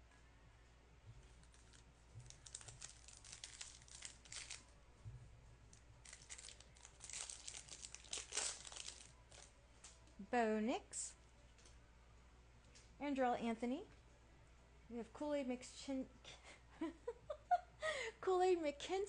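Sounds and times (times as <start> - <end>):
foil wrapper crinkling and tearing: 1.4 - 4.7, 6.0 - 9.5.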